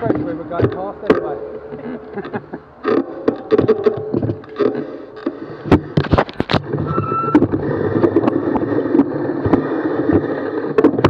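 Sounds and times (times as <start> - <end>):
high squeal: 6.8 - 7.6.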